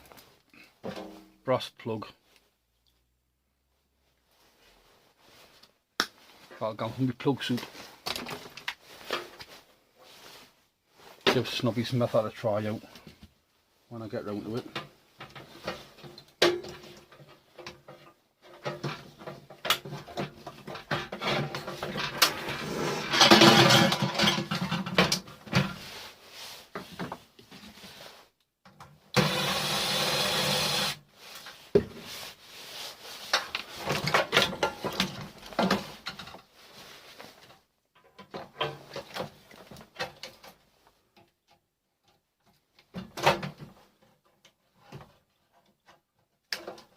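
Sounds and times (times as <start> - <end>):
metal parts clattering: 21.0 - 25.0.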